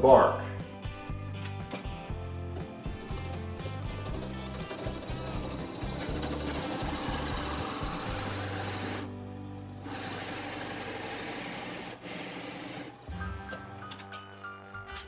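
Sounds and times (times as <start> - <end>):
drill motor humming: 2.7 - 9.1, 9.8 - 13.1
drill bit boring into wood: 4.1 - 9.1, 9.9 - 12.9.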